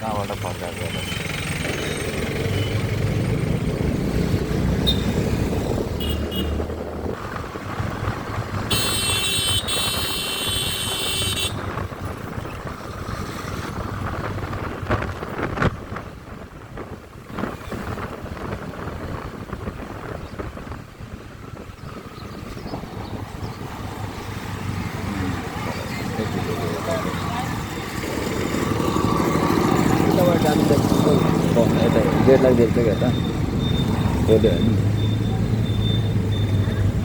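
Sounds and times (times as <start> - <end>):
motorcycle engine: 0.0 - 14.8
street traffic rumble: 0.0 - 37.0
high horn: 8.7 - 11.6.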